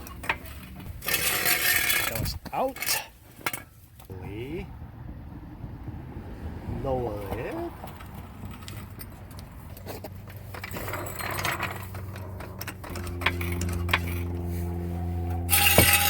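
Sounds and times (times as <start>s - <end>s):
tools clicking and clattering: 0.0s - 3.8s, 7.8s - 14.5s, 15.3s - 16.0s.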